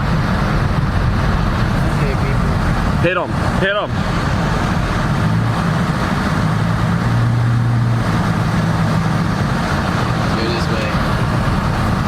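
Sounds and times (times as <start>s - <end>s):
car engine hum: 0.0s - 12.0s
road and tyre noise: 0.0s - 12.0s.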